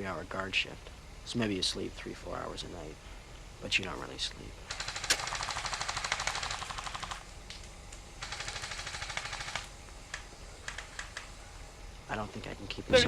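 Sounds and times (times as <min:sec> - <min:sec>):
airsoft gun rapid bursts: 0:04.7 - 0:07.3, 0:08.2 - 0:09.7.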